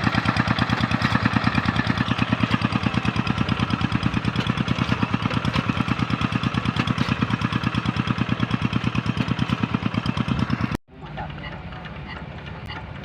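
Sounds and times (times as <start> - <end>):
single-cylinder diesel engine running: 0.0 - 13.0.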